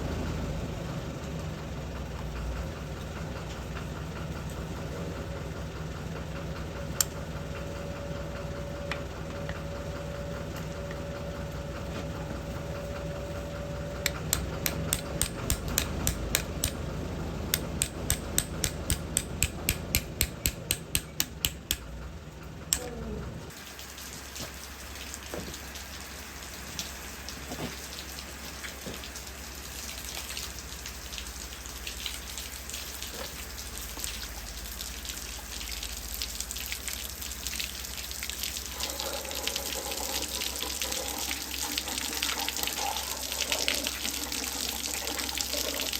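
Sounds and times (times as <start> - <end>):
motor humming: 6.4 - 23.4
rapid clicks: 17.5 - 21.9
water dripping and trickling: 23.5 - 45.9.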